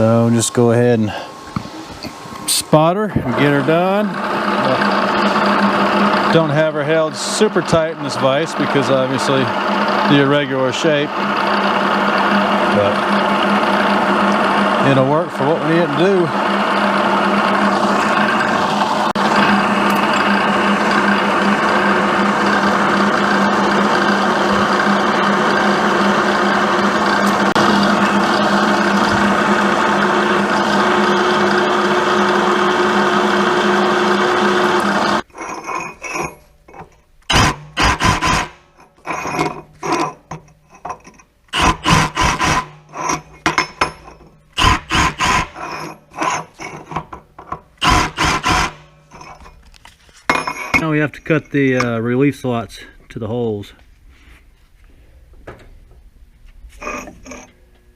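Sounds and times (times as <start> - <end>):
milling machine drilling metal: 2.0 - 40.2, 41.1 - 47.0, 47.8 - 49.5
metallic clanks and knocks: 42.3 - 47.9.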